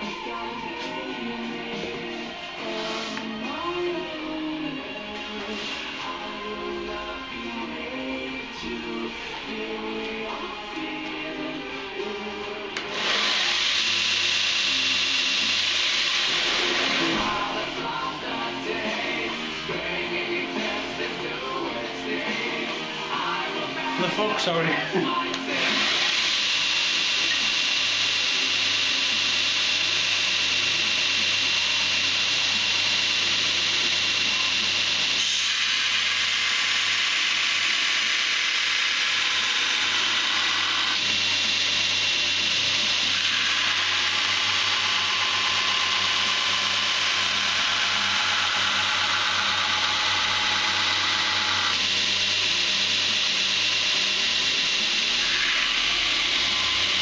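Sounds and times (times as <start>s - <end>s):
motor humming: 0.0s - 24.0s, 24.9s - 57.0s
belt grinder grinding steel: 12.8s - 21.6s, 25.3s - 57.0s.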